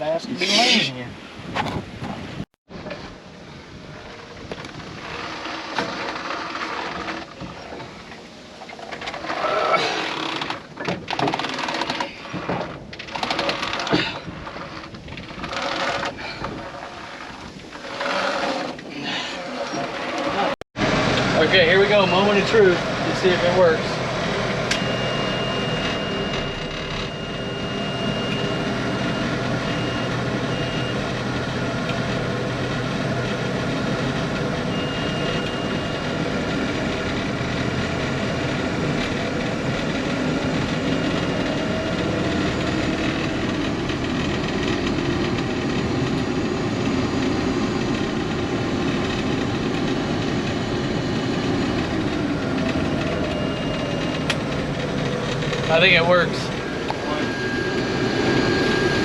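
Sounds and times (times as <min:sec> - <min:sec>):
combine harvester running: 0:02.7 - 0:59.0
thin high tone: 0:55.6 - 0:59.0.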